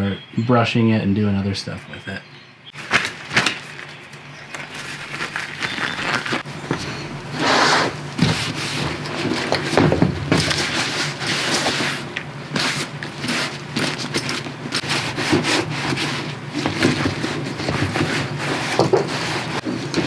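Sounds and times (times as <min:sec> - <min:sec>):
wipe rubbing leather: 0:05.0 - 0:09.5, 0:14.8 - 0:20.0.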